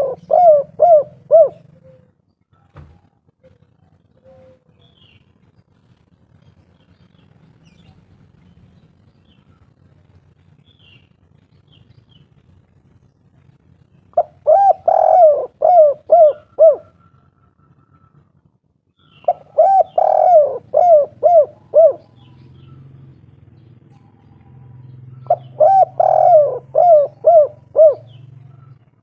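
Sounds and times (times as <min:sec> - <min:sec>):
dove cooing: 0:00.0 - 0:02.2, 0:02.9 - 0:04.9, 0:14.1 - 0:18.2, 0:19.1 - 0:23.1, 0:24.0 - 0:29.0.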